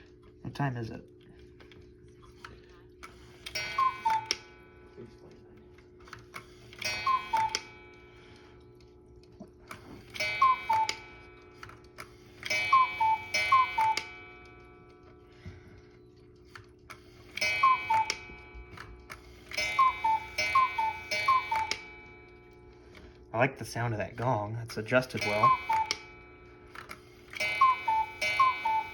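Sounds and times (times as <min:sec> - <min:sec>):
cuckoo clock ticking: 0:03.0 - 0:04.8, 0:06.1 - 0:08.8, 0:09.7 - 0:15.4, 0:16.3 - 0:28.9
clock gong ringing: 0:03.4 - 0:05.4, 0:06.6 - 0:15.7, 0:17.2 - 0:28.9
two-note cuckoo calls: 0:03.5 - 0:04.5, 0:06.8 - 0:07.8, 0:10.2 - 0:11.2, 0:12.5 - 0:14.3, 0:17.3 - 0:18.4, 0:19.4 - 0:22.0, 0:25.2 - 0:26.1, 0:27.4 - 0:28.9.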